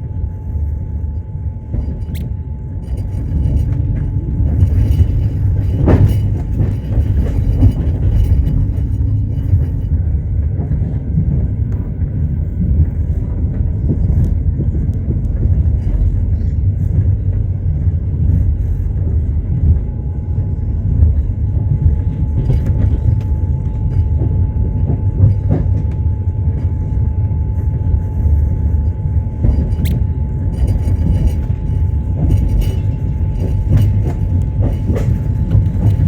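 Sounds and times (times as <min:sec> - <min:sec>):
train wheels rumbling on rails: 0:00.0 - 0:36.0.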